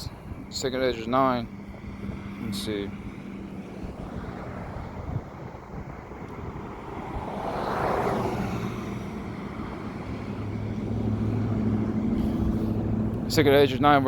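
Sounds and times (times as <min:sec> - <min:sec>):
low engine hum: 0:00.0 - 0:14.0
vehicle passing: 0:00.0 - 0:14.0.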